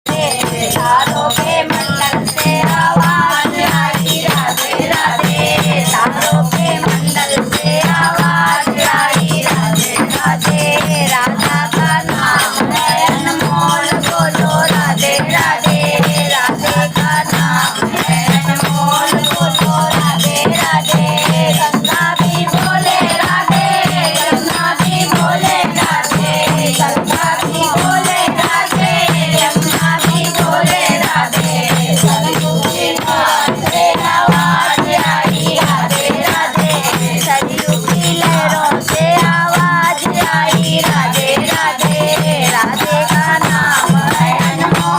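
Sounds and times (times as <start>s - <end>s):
hand percussion beat: 0.0s - 44.9s
person singing folk song: 0.1s - 44.9s.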